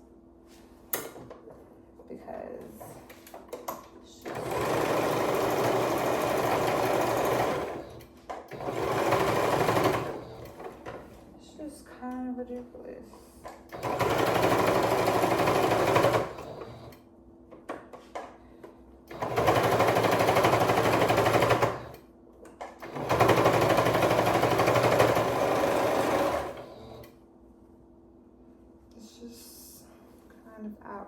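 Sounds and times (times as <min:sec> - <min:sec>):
sewing machine stitching: 0:04.2 - 0:11.1, 0:13.7 - 0:17.0, 0:19.1 - 0:22.0, 0:22.7 - 0:27.2.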